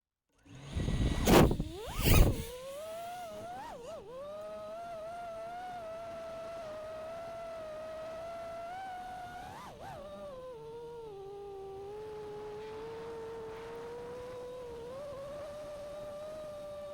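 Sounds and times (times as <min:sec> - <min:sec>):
quadcopter motors whining: 0:00.5 - 0:16.9.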